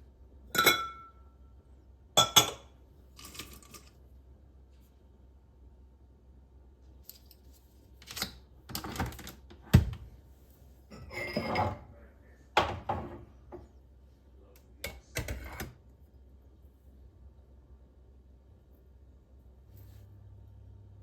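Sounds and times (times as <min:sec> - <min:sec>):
objects knocking and clattering: 0:12.6 - 0:13.7.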